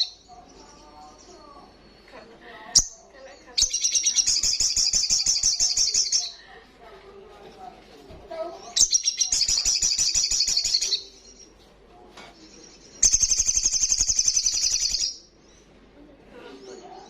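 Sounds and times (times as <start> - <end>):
bird high rapid chattering: 0.0 - 6.4, 8.6 - 11.6, 12.5 - 15.7.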